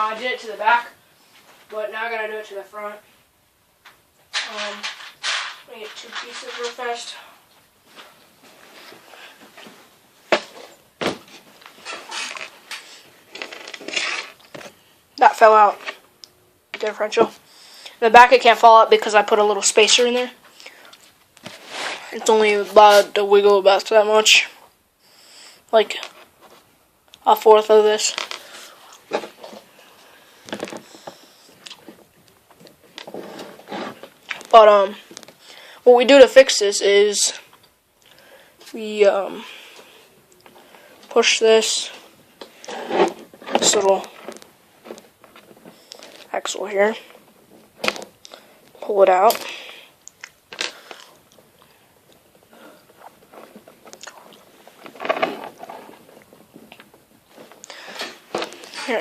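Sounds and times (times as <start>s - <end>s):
plastic parts clicking and scraping: 4.3s - 7.0s, 42.4s - 46.3s, 52.8s - 59.0s
plastic parts rattling: 4.3s - 7.0s.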